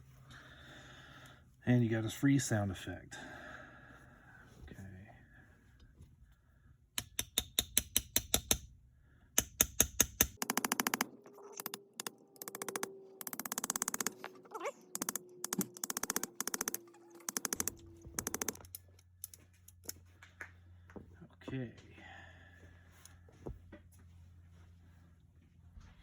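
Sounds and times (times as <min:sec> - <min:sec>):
revolver action clicking: 0:09.4 - 0:20.0.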